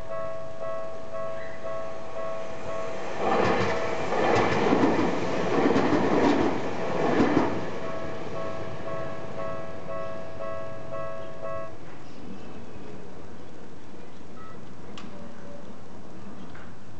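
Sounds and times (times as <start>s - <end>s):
crossing warning bell ringing: 0.0s - 3.1s, 7.8s - 11.9s
train wheels clattering over joints: 3.3s - 7.6s.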